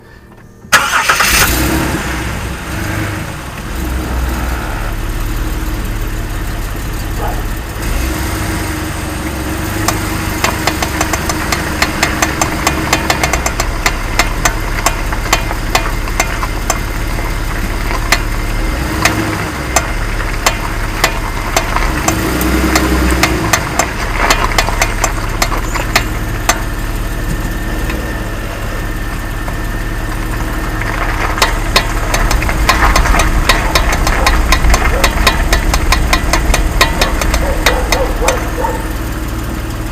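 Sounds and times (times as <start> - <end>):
car engine running: 0.0 - 39.9
wheel clicking and rattling: 9.2 - 39.9.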